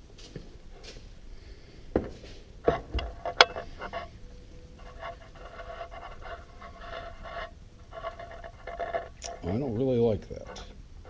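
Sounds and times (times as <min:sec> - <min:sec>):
metal tools knocking and clicking: 0:02.7 - 0:04.0
faint ringing tone: 0:03.2 - 0:09.8.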